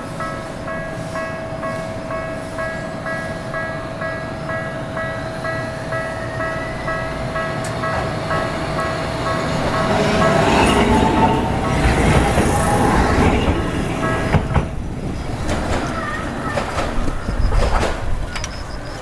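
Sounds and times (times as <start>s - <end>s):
level crossing warning bell: 0.0s - 14.6s
train rumble: 0.0s - 19.0s.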